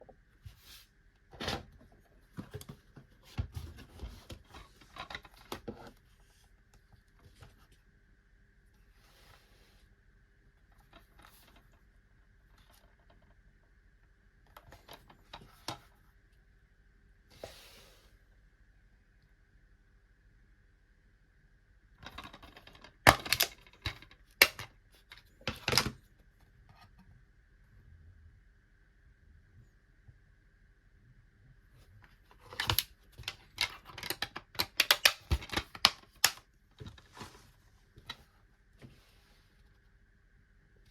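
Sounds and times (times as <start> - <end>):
dvd cases clicking and rustling: 32.4 - 37.4.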